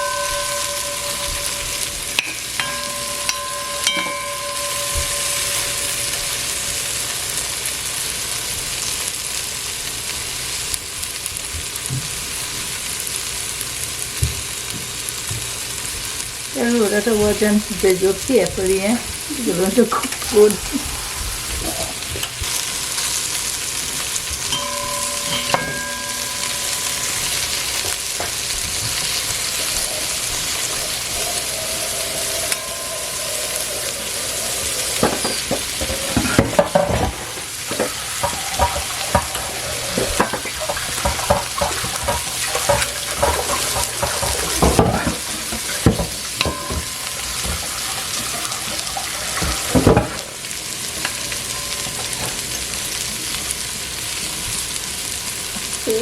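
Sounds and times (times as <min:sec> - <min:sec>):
okra sizzling in oil: 0:00.0 - 0:56.0
spoon scraping a pot: 0:24.5 - 0:50.2.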